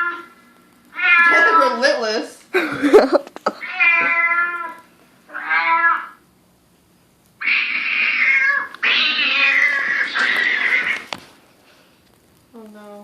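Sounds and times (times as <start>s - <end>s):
cat caterwauling: 0.0s - 1.8s, 3.6s - 6.2s, 7.4s - 11.1s
cat meow: 0.0s - 1.8s, 3.6s - 6.2s, 7.4s - 11.1s.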